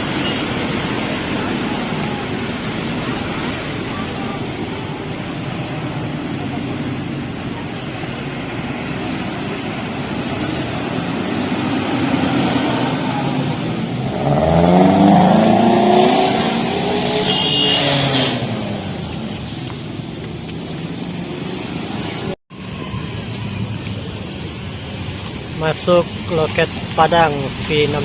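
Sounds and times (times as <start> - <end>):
diesel bus engine revving: 0.0 - 19.2
traffic noise: 0.0 - 28.0.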